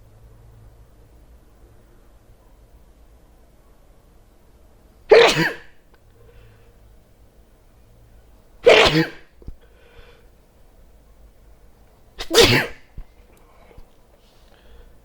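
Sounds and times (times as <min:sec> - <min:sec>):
person sneezing loudly: 0:05.1 - 0:05.8, 0:08.6 - 0:09.4, 0:12.2 - 0:13.0.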